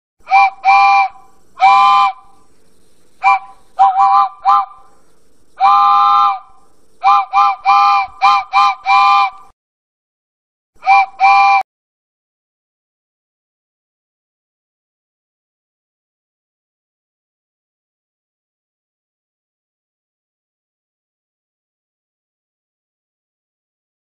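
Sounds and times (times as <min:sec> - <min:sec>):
faint steam hiss: 0:00.2 - 0:09.5
steam locomotive whistle: 0:00.3 - 0:02.4, 0:03.2 - 0:05.0, 0:05.6 - 0:09.5, 0:10.8 - 0:11.6.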